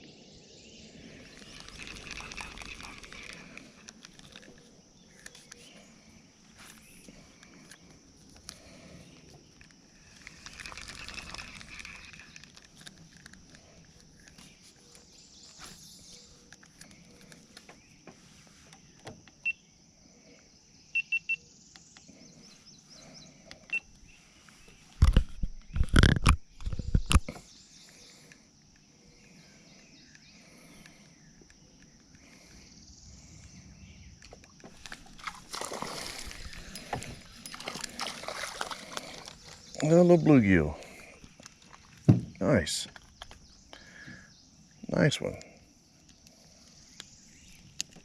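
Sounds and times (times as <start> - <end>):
water splashing: 1.3 - 3.8, 10.0 - 12.6, 34.7 - 41.0.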